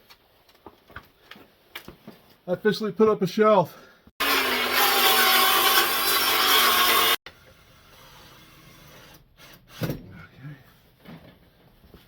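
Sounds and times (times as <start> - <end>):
power saw cutting wood: 4.2 - 7.2.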